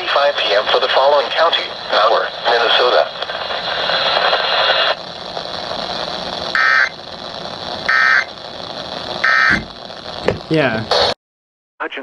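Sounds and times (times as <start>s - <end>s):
radio hiss: 0.0s - 11.2s
digital tone bursts: 7.9s - 8.3s, 9.2s - 9.7s.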